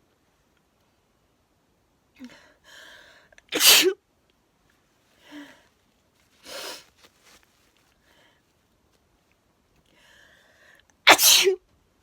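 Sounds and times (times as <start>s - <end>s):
woman sneezing: 3.6s - 4.0s, 11.1s - 11.6s
soft breathy noises: 5.0s - 8.8s, 9.8s - 11.0s.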